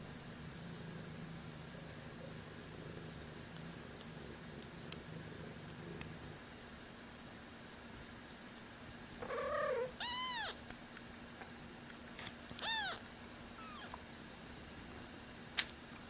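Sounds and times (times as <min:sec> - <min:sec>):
kittens mewing: 0:09.2 - 0:10.6, 0:12.6 - 0:14.0.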